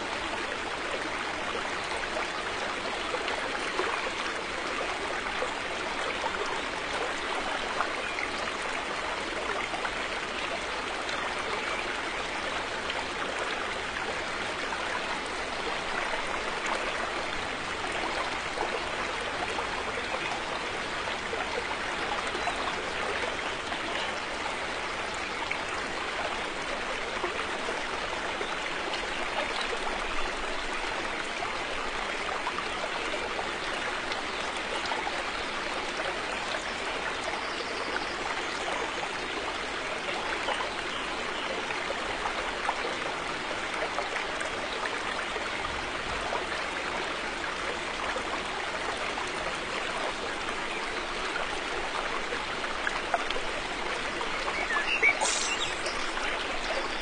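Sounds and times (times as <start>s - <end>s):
river water rushing: 38.2s - 57.0s.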